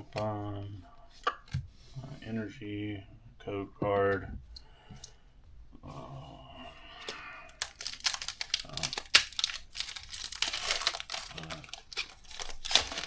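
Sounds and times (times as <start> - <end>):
foil wrapper crinkling and tearing: 7.0 - 13.0.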